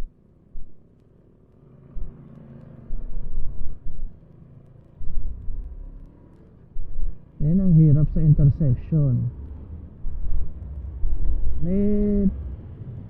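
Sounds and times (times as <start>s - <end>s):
motorcycle engine running: 0.0s - 13.0s
loud low rumbling bursts: 2.8s - 4.2s, 4.9s - 13.0s.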